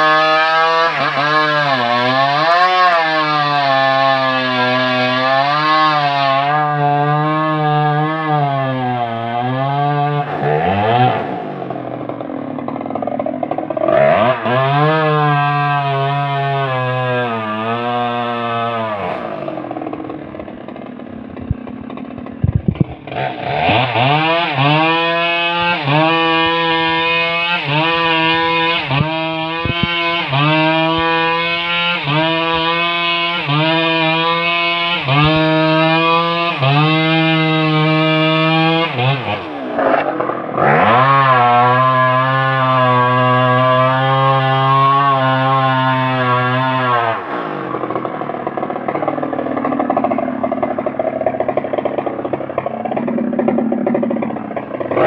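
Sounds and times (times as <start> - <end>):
chainsaw revving: 0.0 - 55.0.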